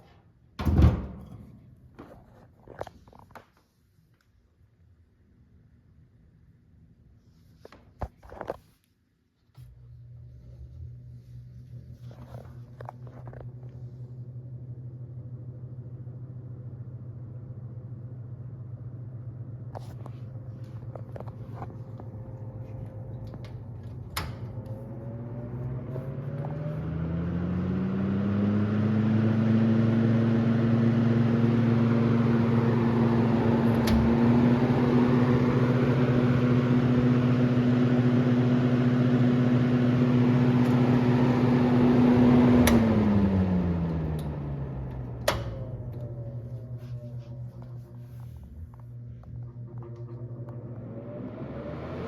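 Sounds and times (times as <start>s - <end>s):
box fan motor hum and whoosh: 19.3s - 52.0s
fan switch click: 32.4s - 36.8s, 40.6s - 43.2s, 43.9s - 46.1s.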